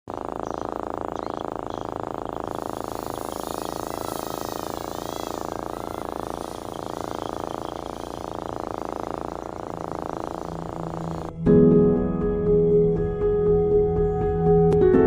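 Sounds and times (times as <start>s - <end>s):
quadcopter propellers buzzing: 0.0s - 11.4s.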